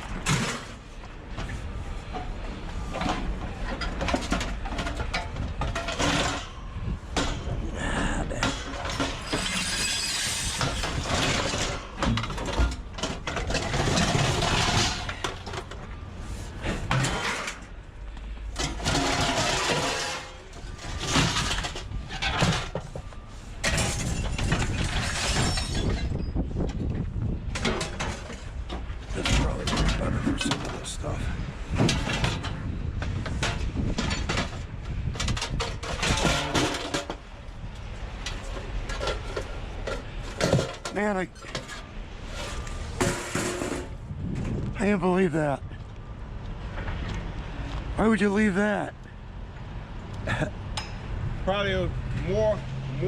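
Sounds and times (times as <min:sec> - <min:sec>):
scrap metal clattering: 0:00.0 - 0:00.8, 0:02.9 - 0:17.8, 0:18.6 - 0:26.2, 0:27.6 - 0:37.2, 0:38.2 - 0:44.0.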